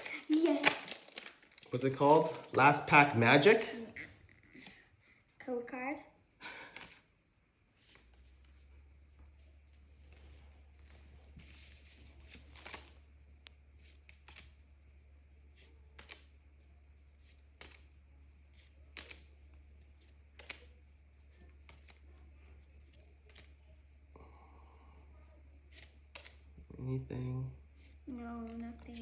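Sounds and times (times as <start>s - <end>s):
trading cards clicking and rustling: 0.0s - 3.6s, 6.5s - 7.1s, 10.8s - 13.0s, 13.7s - 14.7s, 15.6s - 23.6s, 25.7s - 26.5s.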